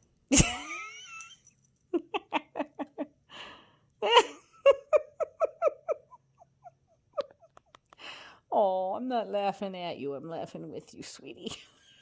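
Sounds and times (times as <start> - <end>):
woman laughing: 0.3 - 1.4, 2.0 - 3.2, 4.0 - 7.6.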